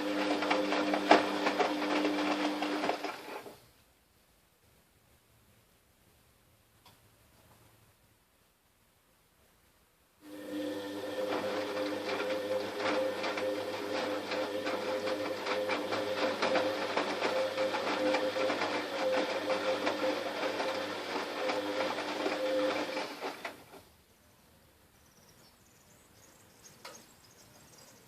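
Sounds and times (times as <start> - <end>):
washing machine motor whine: 0.0 - 3.5, 10.2 - 23.8.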